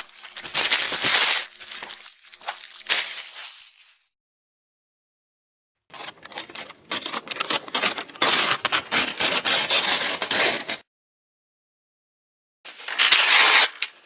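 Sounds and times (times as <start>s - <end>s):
paper tearing: 0.0s - 3.6s, 12.8s - 14.0s.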